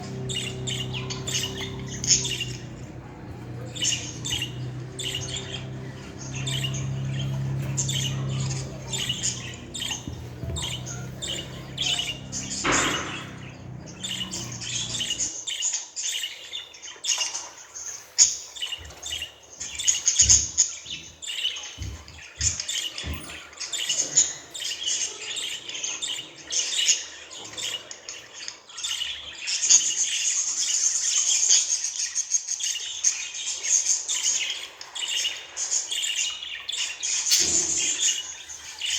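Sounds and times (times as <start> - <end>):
low steady hum: 0.0 - 15.3.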